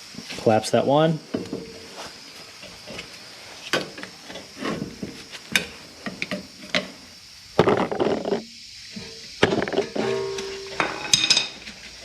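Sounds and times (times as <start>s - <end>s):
scraping rattle: 8.9s - 11.7s.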